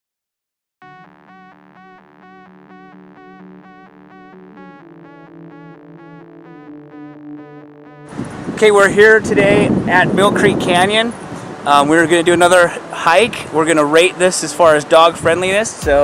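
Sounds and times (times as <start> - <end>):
synthesizer music: 0.8 - 8.9, 11.7 - 16.0.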